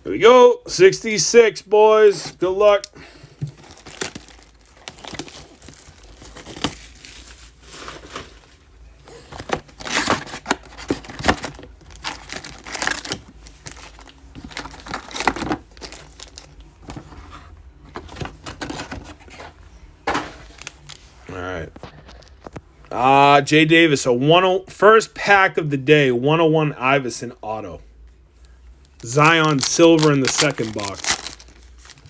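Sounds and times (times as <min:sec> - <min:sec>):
wrappers tearing and crinkling: 0:03.5 - 0:08.7, 0:09.4 - 0:16.6, 0:20.4 - 0:21.1, 0:28.8 - 0:32.0.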